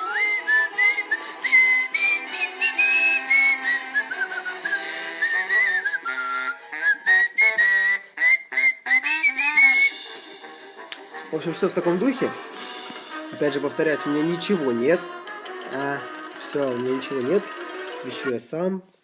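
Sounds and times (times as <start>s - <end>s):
quiet backing music: 0.0s - 7.4s, 9.8s - 18.8s
man whistling a tune: 0.0s - 10.2s.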